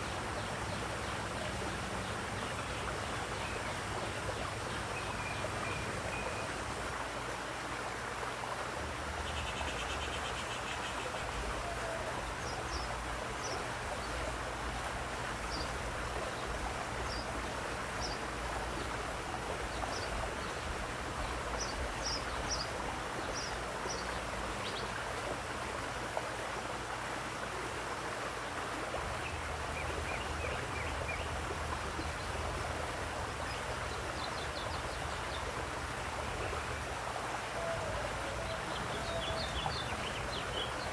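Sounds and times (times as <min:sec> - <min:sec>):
running water rushing: 0:00.0 - 0:40.9
birds chirping: 0:09.2 - 0:25.1, 0:37.6 - 0:40.9.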